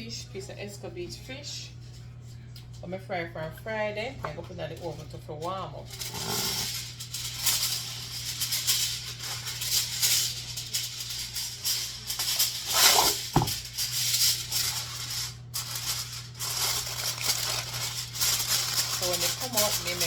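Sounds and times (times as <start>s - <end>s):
aluminium foil crinkling: 4.0s - 20.0s
crackle and knock: 6.0s - 20.0s.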